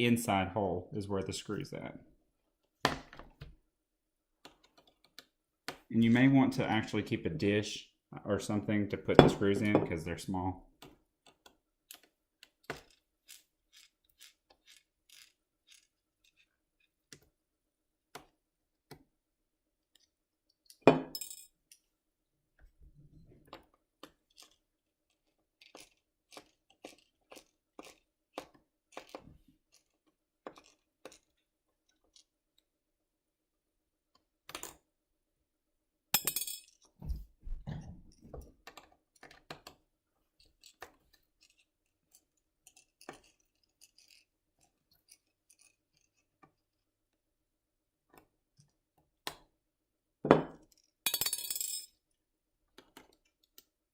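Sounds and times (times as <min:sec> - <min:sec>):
small screw clicks and metal clinks: 0:04.4 - 0:05.4, 0:11.2 - 0:17.4, 0:19.8 - 0:21.9, 0:23.5 - 0:32.7, 0:36.2 - 0:37.0, 0:38.6 - 0:47.0, 0:48.1 - 0:49.4, 0:50.6 - 0:53.8.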